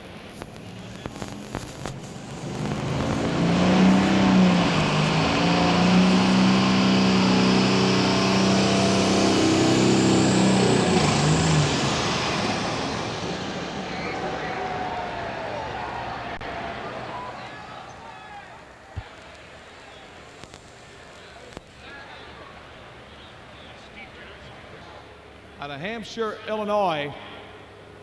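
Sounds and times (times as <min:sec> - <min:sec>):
tractor diesel engine at full throttle: 0:02.1 - 0:16.6.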